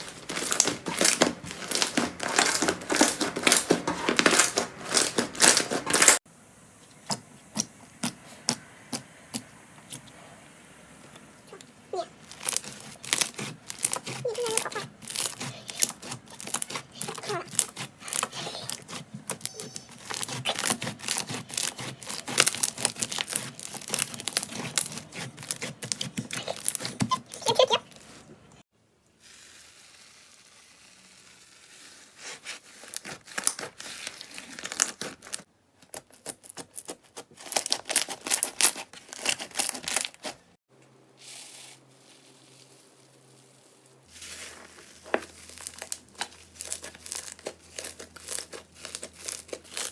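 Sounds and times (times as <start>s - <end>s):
slime crackling and popping: 0.0s - 6.2s, 12.2s - 27.6s, 32.7s - 40.3s, 44.2s - 49.9s.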